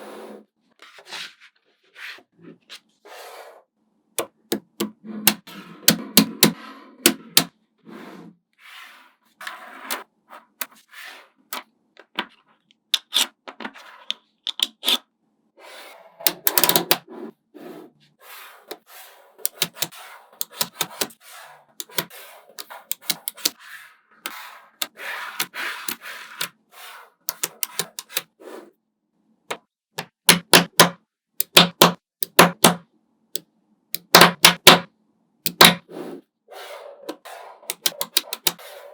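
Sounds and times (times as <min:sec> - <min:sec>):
magnetic balls clicking together: 0:21.8 - 0:23.6, 0:30.0 - 0:32.8, 0:34.0 - 0:34.9, 0:35.5 - 0:35.8, 0:37.7 - 0:38.6.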